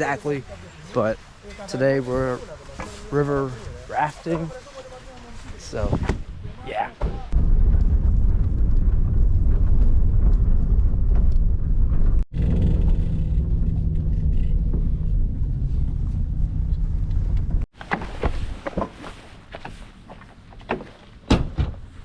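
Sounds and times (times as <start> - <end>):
loud low rumble: 7.3 - 17.7.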